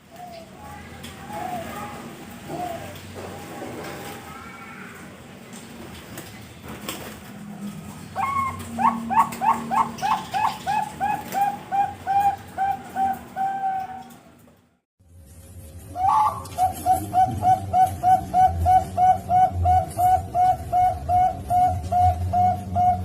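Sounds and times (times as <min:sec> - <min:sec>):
dove cooing: 0:00.1 - 0:04.9, 0:08.1 - 0:14.3, 0:16.0 - 0:23.0.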